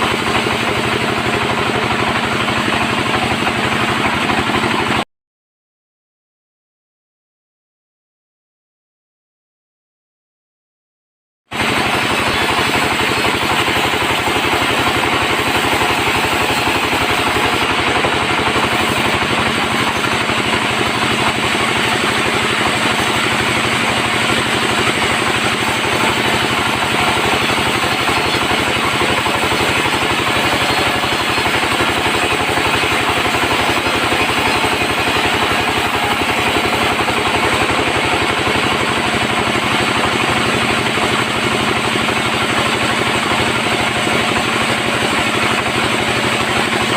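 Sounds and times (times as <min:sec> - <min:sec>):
bandsaw sawing timber: 0:11.6 - 0:43.6.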